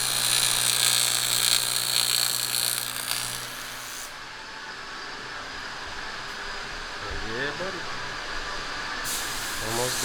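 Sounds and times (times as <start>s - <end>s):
power tool humming: 0.0s - 4.2s
faint workshop background noise: 0.0s - 10.0s.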